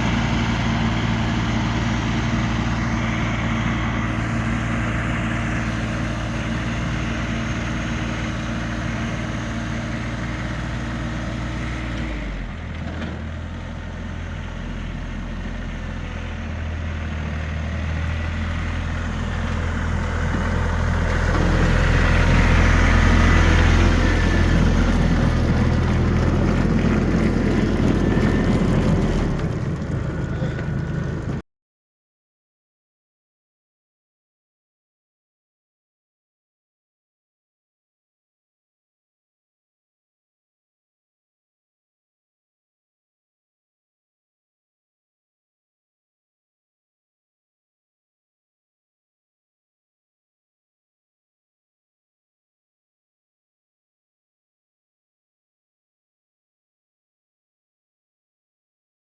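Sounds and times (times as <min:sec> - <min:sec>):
tractor engine running: 0:00.0 - 0:31.4.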